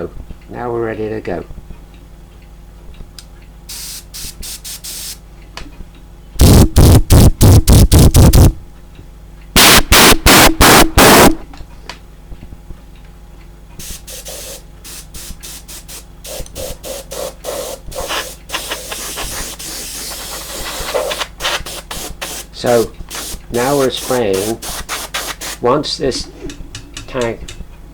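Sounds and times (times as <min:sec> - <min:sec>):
airbrush spraying hiss: 0:03.7 - 0:05.2, 0:06.4 - 0:08.5, 0:13.8 - 0:25.6
loud air blasts: 0:03.7 - 0:05.2, 0:06.4 - 0:08.5, 0:09.6 - 0:11.4, 0:13.8 - 0:25.6.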